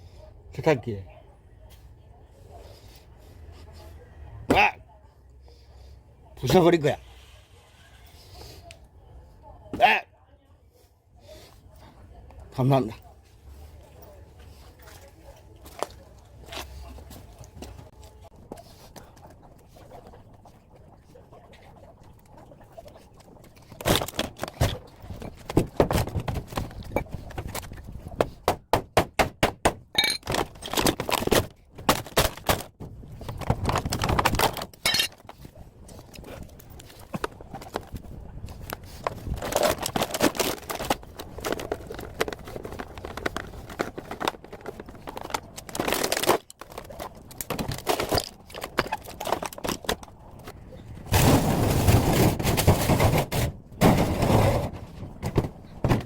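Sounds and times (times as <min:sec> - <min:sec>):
plastic and metal parts breaking: 0:23.6 - 0:27.7, 0:29.5 - 0:35.4, 0:38.6 - 0:50.2, 0:51.1 - 0:56.0.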